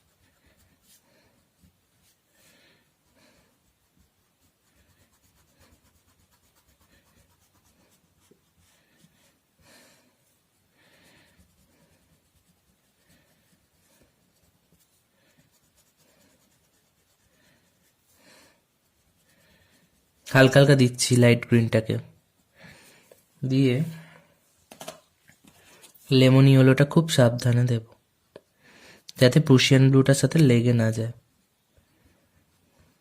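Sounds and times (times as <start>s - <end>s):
pencil shading on paper: 0.0s - 2.2s, 2.8s - 9.6s, 10.3s - 20.8s.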